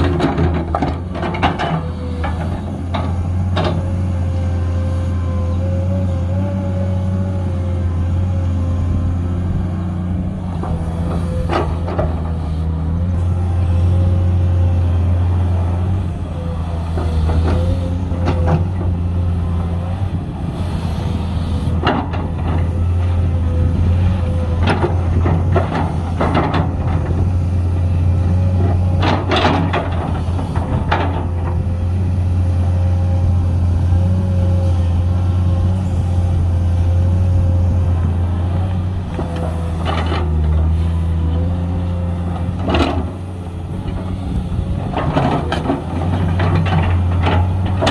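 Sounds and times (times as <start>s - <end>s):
excavator diesel engine running: 0.0s - 47.9s
hydraulic whine: 10.4s - 24.6s.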